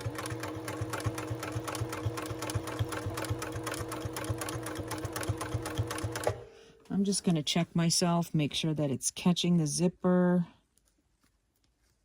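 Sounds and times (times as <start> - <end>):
sewing machine running: 0.0 - 6.4.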